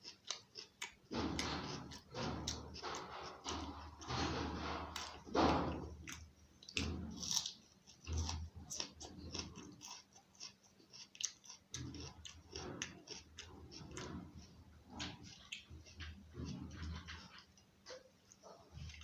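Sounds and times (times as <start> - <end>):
person chewing and lip smacking: 0.0 - 1.1, 6.0 - 16.2.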